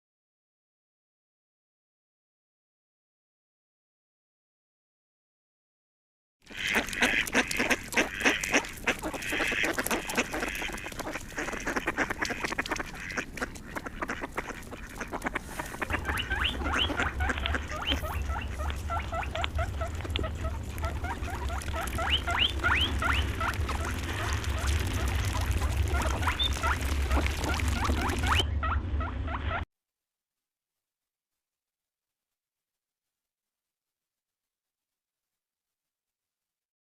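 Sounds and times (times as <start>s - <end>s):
poultry calling: 6.5s - 29.6s
low hum: 9.9s - 29.7s.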